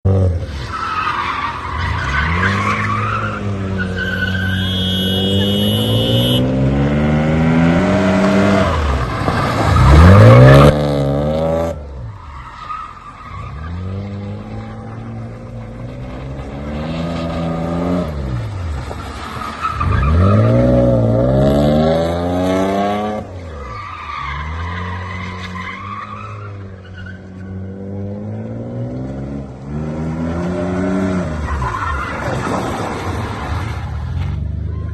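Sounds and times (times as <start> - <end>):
tyres squealing: 1.0 - 6.4
car engine revving: 1.8 - 11.9.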